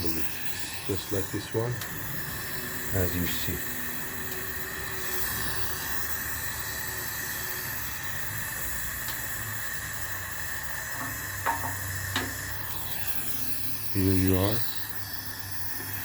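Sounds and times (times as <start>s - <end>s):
gas torch flame hissing: 0.0s - 16.0s
metallic knock: 11.0s - 12.4s.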